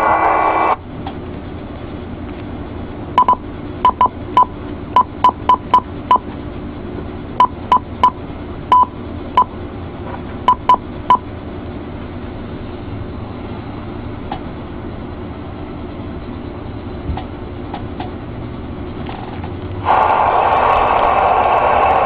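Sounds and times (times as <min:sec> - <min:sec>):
radio hiss and hum: 0:00.0 - 0:00.8.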